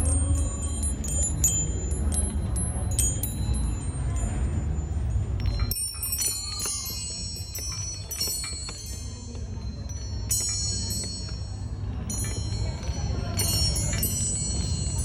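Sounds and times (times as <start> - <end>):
steady low rumble: 0.0 - 15.0
wind chime ringing: 0.0 - 15.0.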